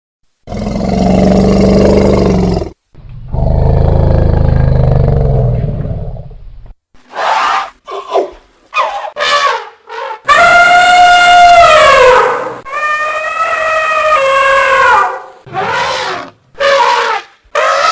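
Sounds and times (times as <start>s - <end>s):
elephant trumpeting: 7.1s - 17.9s
elephant roaring: 15.5s - 17.9s.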